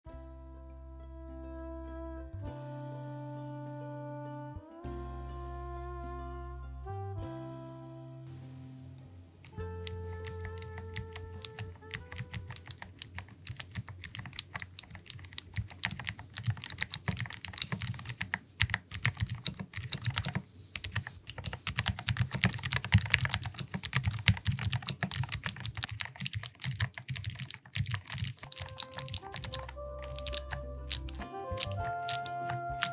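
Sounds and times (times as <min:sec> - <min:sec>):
clicky mechanical keyboard typing: 0:09.4 - 0:32.9.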